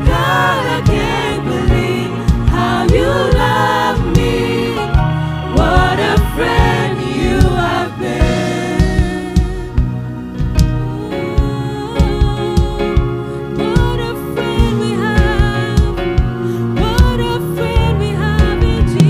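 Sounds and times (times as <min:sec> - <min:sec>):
people singing gospel: 0:00.0 - 0:10.1
drum hits: 0:00.0 - 0:11.0
bass: 0:00.0 - 0:19.0.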